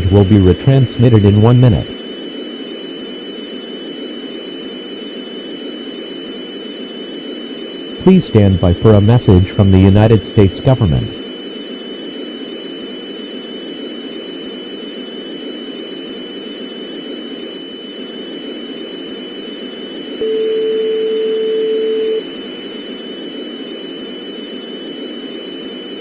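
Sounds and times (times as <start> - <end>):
faint high-pitched whine: 0.0 - 26.0
loud steady beep: 20.1 - 22.4.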